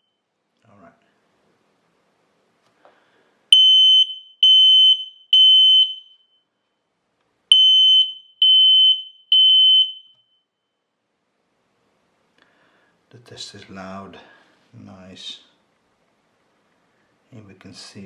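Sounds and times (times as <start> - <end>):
smoke alarm beeps: 3.5 - 6.8, 7.5 - 10.8.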